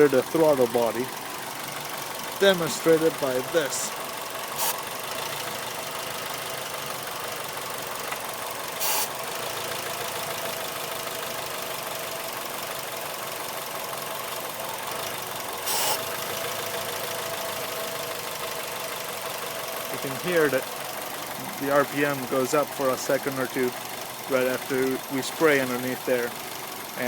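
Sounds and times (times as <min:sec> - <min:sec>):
car engine idling: 0:00.0 - 0:27.0
aerosol spray hissing: 0:08.8 - 0:09.1.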